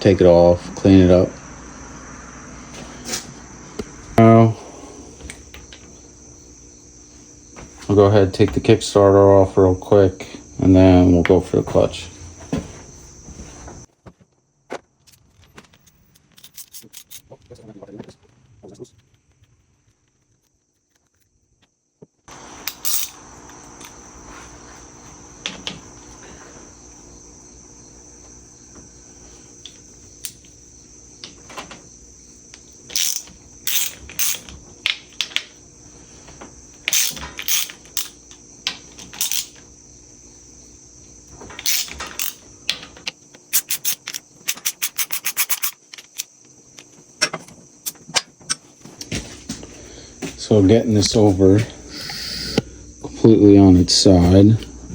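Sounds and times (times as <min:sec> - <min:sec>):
high-pitched whine: 0:00.0 - 0:06.6
ratchet clicking: 0:32.9 - 0:34.5, 0:36.8 - 0:38.2, 0:39.1 - 0:39.6, 0:41.6 - 0:42.4, 0:43.5 - 0:46.3.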